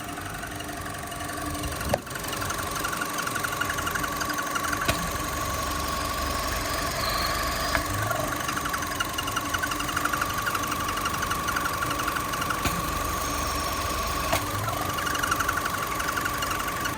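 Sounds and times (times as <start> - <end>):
car engine running: 0.0 - 16.9
sharp click: 3.2 - 8.5, 11.1 - 15.6
high-pitched chirping trill: 3.3 - 14.3.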